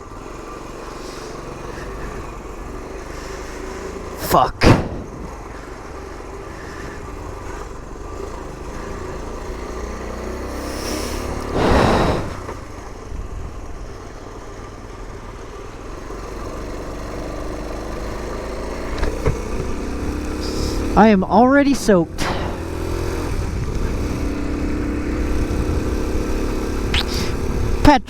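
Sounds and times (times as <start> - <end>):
motorcycle engine running: 0.0 - 28.0
loud rushing burst: 4.6 - 5.6, 10.5 - 12.8.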